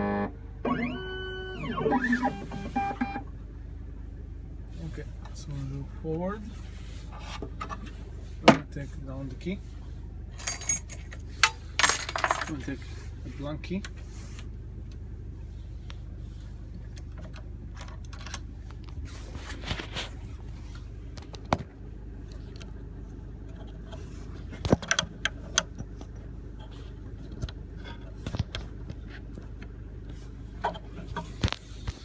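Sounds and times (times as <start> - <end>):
low machine hum: 0.0 - 32.0
metal keys clicking and clinking: 10.4 - 11.2.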